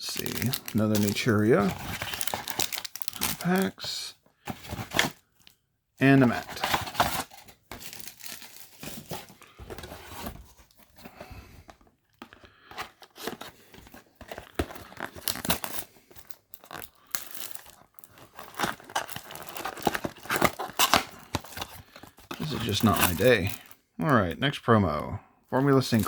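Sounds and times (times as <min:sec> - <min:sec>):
packaging torn and crinkled: 0:00.0 - 0:03.9, 0:06.2 - 0:09.1, 0:14.4 - 0:23.7.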